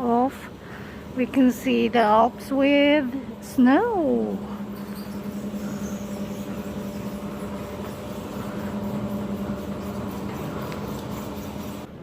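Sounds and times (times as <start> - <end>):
mechanical hum: 0.0 - 12.0.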